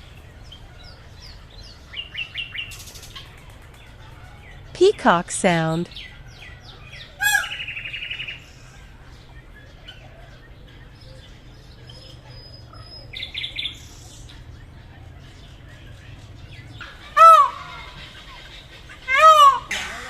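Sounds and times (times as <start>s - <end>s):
peacock calling: 5.6s - 10.9s, 12.7s - 20.0s
harsh pulsed bird call: 16.8s - 20.0s.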